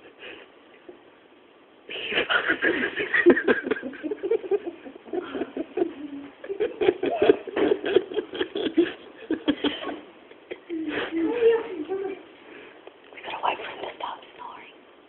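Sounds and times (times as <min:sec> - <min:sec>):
people stifling laughter: 0:01.9 - 0:11.1.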